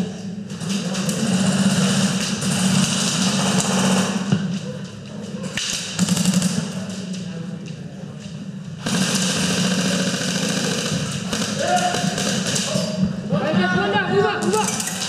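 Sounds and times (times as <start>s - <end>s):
airsoft guns firing full auto: 0.6s - 4.3s, 5.6s - 6.8s, 8.8s - 13.0s.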